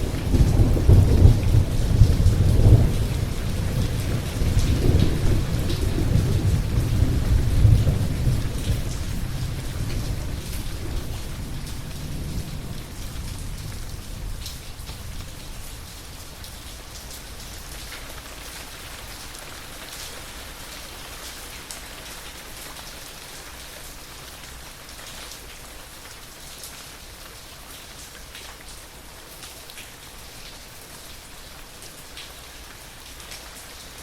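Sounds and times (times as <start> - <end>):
low rumble of thunder: 0.0 - 17.6
steady rain falling: 0.0 - 34.0.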